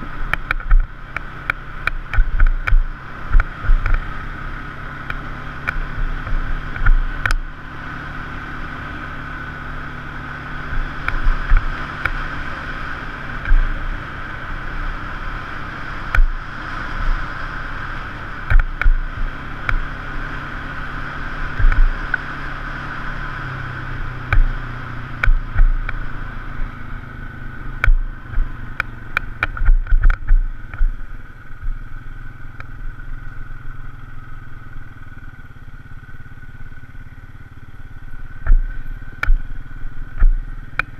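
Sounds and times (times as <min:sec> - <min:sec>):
knocks and clatter over bumps: 0:00.0 - 0:04.3, 0:05.0 - 0:07.5, 0:10.6 - 0:12.6, 0:13.3 - 0:14.1, 0:16.0 - 0:17.3, 0:18.1 - 0:20.0, 0:21.4 - 0:22.3, 0:24.2 - 0:26.1, 0:27.6 - 0:31.9, 0:38.4 - 0:40.9
off-road vehicle engine running: 0:00.0 - 0:40.9.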